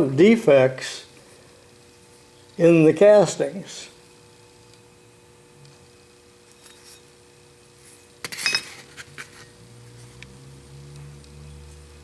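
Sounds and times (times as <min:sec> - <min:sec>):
metal parts clinking: 0:08.2 - 0:09.4.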